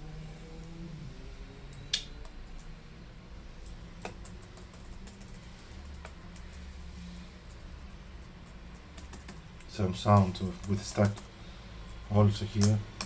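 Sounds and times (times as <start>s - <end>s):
laptop keys clicking: 3.6s - 6.8s, 7.5s - 11.4s, 12.4s - 13.0s.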